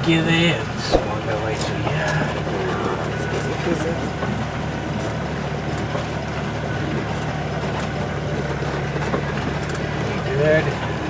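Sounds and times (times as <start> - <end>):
van engine running in low gear: 0.0 - 11.0.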